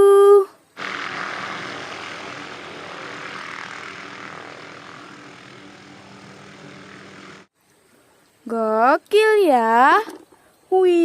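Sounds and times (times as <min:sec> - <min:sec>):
helicopter engine and rotor: 0:00.8 - 0:07.5.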